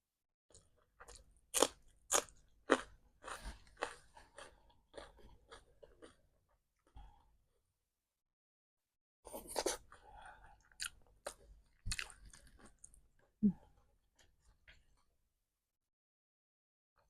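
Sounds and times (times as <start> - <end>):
person chewing with wet smacks: 10.6 - 13.0.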